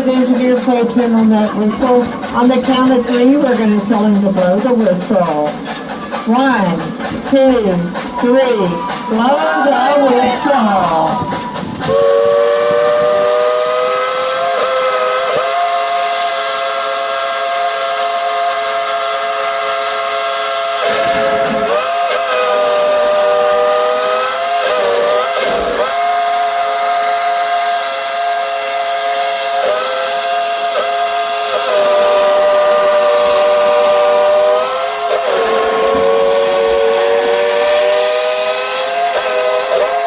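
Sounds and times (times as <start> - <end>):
steam hissing: 0.0 - 40.0
steam whistle chord: 11.9 - 40.0.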